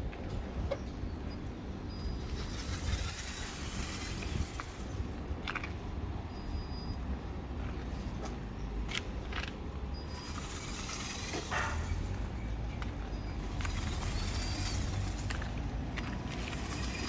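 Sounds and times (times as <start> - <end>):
toy truck motor rumbling: 1.8 - 5.9, 9.0 - 17.0.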